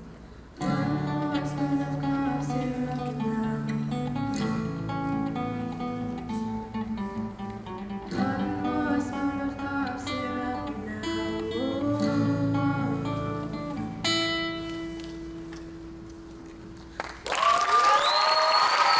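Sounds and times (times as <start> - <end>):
acoustic guitar strumming: 0.0 - 17.0
person singing: 0.6 - 5.3, 8.1 - 14.0.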